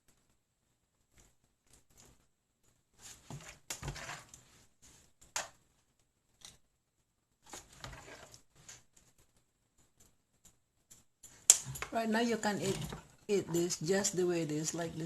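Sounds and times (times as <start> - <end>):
scraping and rustling handling noises: 3.0 - 5.6, 7.4 - 9.3, 11.4 - 14.0.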